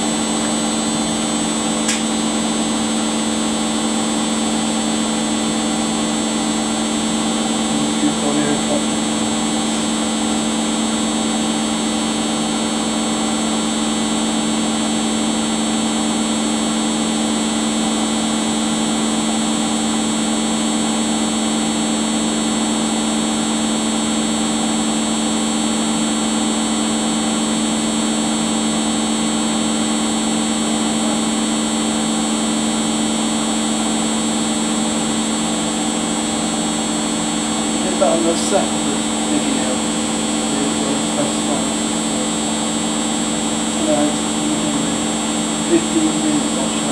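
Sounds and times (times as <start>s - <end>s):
appliance motor humming with whine: 0.0s - 46.9s.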